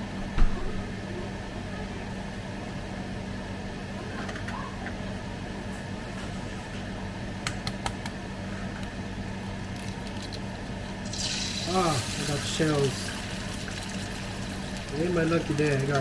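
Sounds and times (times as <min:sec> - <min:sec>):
appliance fan humming: 0:00.0 - 0:16.0.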